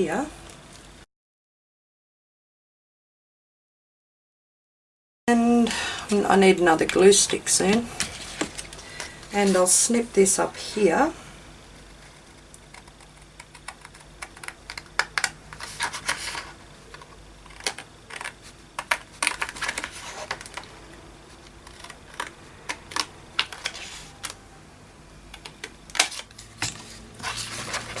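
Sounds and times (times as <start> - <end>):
scissors cutting paper: 11.8 - 24.4.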